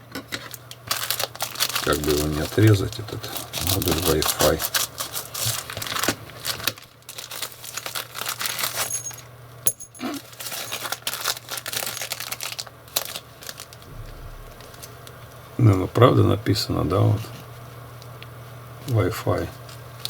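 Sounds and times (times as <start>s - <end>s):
plastic packaging crinkling and tearing: 0.4s - 8.9s, 10.2s - 13.7s.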